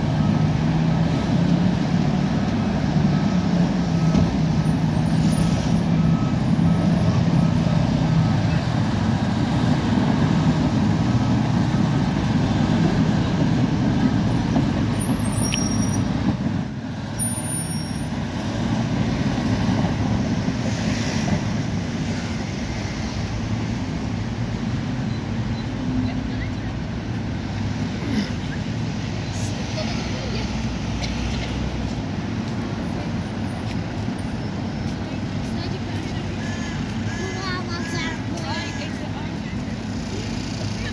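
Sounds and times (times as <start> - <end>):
bulldozer diesel engine rumbling: 0.0 - 20.6.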